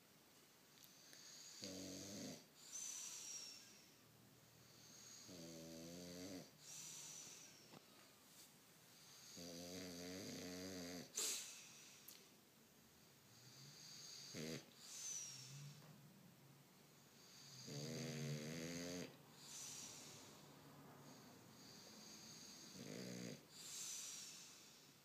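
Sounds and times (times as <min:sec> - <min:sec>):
dog snoring: 0:01.0 - 0:03.9, 0:04.6 - 0:07.6, 0:09.0 - 0:11.7, 0:13.3 - 0:15.9, 0:17.0 - 0:20.4, 0:21.0 - 0:24.9.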